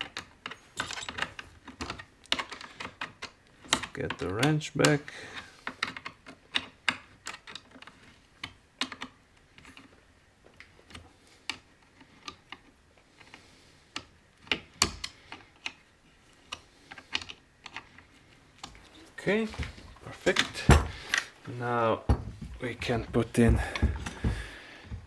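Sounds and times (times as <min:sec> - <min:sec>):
loud knock: 0:20.7 - 0:21.0.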